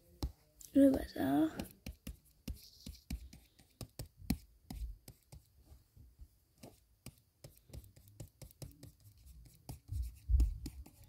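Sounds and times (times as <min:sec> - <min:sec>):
tapping on a touchscreen: 0:00.1 - 0:05.5.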